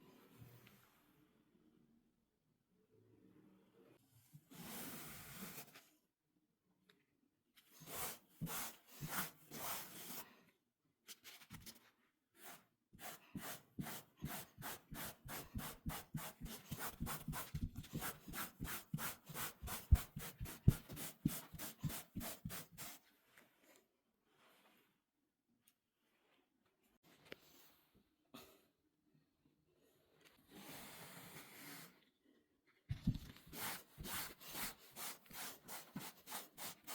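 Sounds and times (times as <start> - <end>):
rubbing strokes across a surface: 7.8 - 10.4, 12.4 - 23.3, 33.5 - 36.9.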